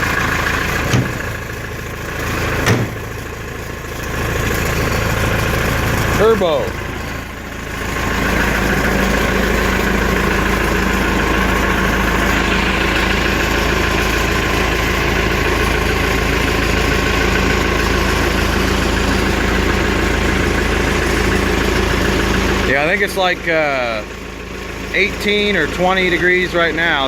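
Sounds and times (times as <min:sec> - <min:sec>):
diesel engine rumbling: 0:00.0 - 0:27.0
turbo whine: 0:00.0 - 0:27.0.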